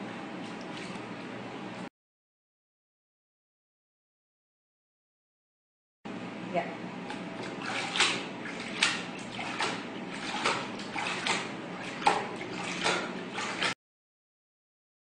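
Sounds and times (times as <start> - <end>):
steady low hum: 0.0 - 1.9, 6.1 - 13.8.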